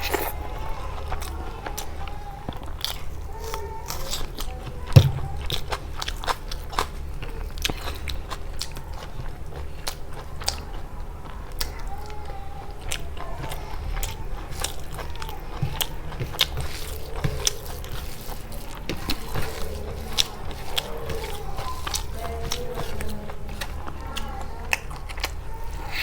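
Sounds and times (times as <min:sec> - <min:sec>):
person chewing and biting food: 0:00.0 - 0:00.4, 0:14.0 - 0:26.0.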